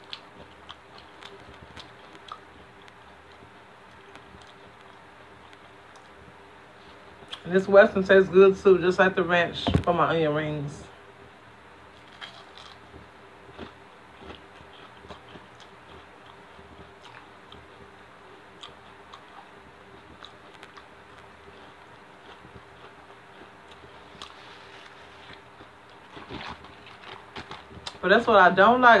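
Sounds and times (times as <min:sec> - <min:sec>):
person chewing food: 0:00.0 - 0:06.2, 0:11.9 - 0:28.0
faint steady hum: 0:00.0 - 0:29.0.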